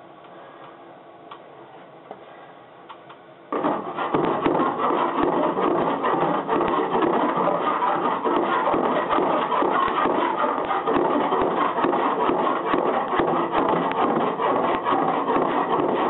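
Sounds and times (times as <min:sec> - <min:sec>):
file rasping on metal: 0:03.6 - 0:16.0.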